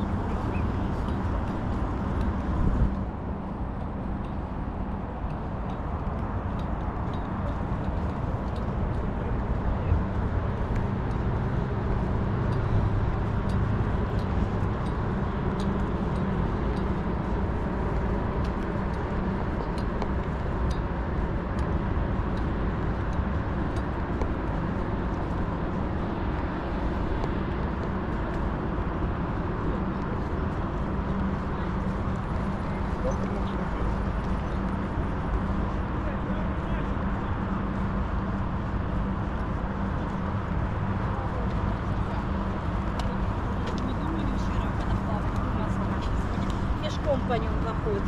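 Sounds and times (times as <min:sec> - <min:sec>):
road traffic rumble: 0:00.0 - 0:48.0.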